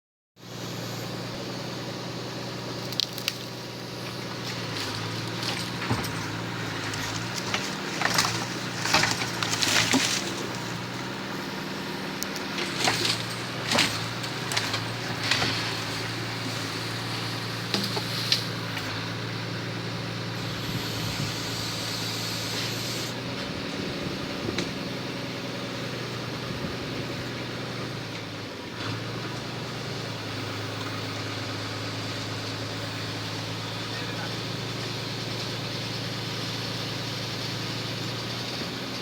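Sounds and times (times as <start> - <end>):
engine running steadily: 0.4 - 39.0
wooden knocks and cracks: 4.8 - 10.7.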